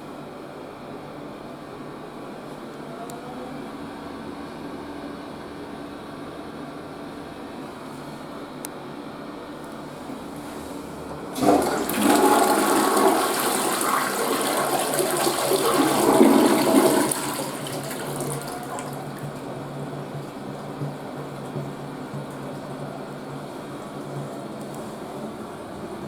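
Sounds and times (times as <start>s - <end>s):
toilet flushing: 10.3s - 26.0s
water running: 11.3s - 25.8s.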